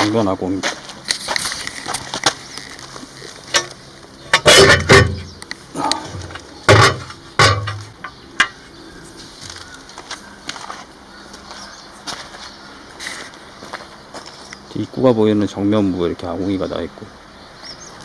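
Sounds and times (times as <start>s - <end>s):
knocks and thumps: 4.3s - 5.4s, 6.0s - 8.6s.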